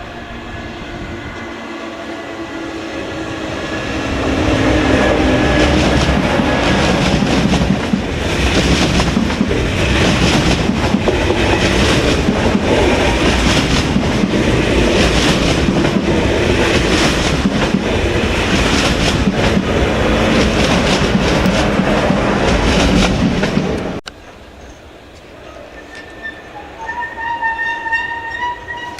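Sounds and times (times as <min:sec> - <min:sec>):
train passing at speed: 0:00.0 - 0:28.9.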